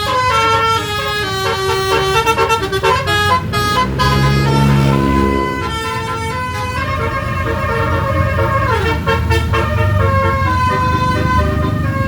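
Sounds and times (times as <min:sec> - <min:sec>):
bus engine rumble: 0:00.0 - 0:12.0
multi-tone bus horn tune: 0:00.0 - 0:12.0.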